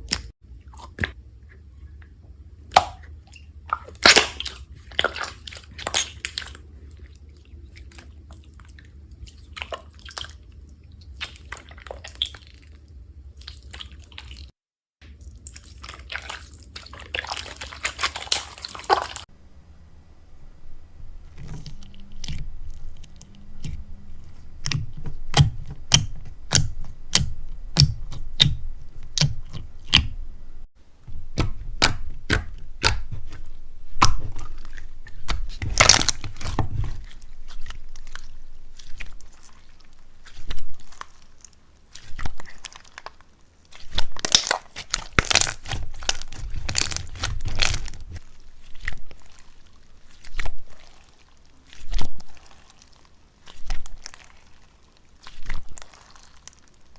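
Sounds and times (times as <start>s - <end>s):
slime popping and crackling: 3.7s - 6.7s, 11.1s - 19.3s, 31.2s - 56.9s.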